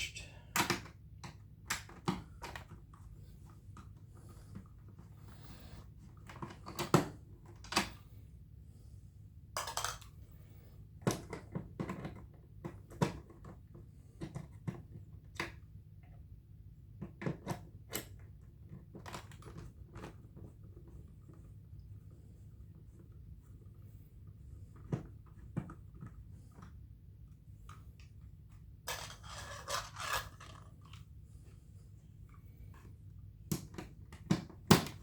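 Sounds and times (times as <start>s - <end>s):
low steady hum: 0.0s - 11.1s, 17.7s - 35.0s
plastic scrape: 28.9s - 31.0s.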